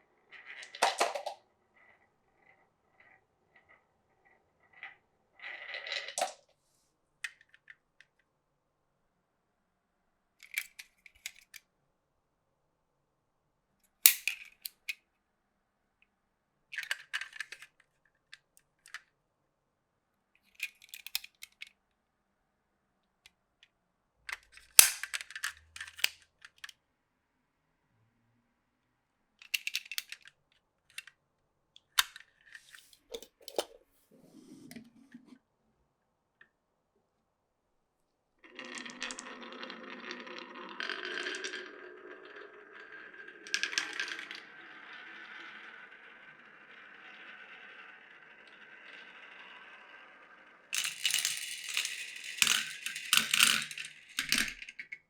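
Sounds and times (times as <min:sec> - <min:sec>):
marbles clattering on wooden track: 0:00.3 - 0:06.5, 0:32.6 - 0:33.8, 0:38.4 - 0:55.0
marbles rolling: 0:00.3 - 0:06.5, 0:32.6 - 0:33.8, 0:38.4 - 0:55.0.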